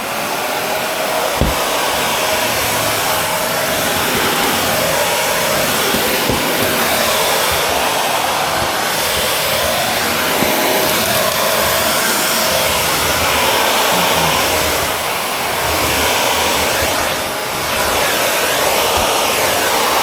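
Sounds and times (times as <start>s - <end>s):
vacuum cleaner running: 0.0s - 20.0s
dull knocks on floor: 1.4s - 2.0s, 5.9s - 7.1s.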